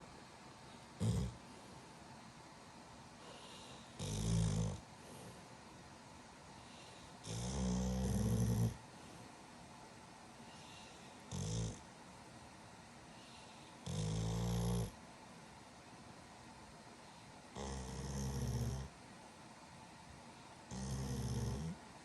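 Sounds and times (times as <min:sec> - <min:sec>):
quiet breathing: 0:00.0 - 0:15.0, 0:16.4 - 0:22.0
dog snoring: 0:01.0 - 0:01.6, 0:03.2 - 0:05.4, 0:06.6 - 0:08.8, 0:10.5 - 0:11.9, 0:13.2 - 0:15.0, 0:17.5 - 0:19.0, 0:20.7 - 0:21.8.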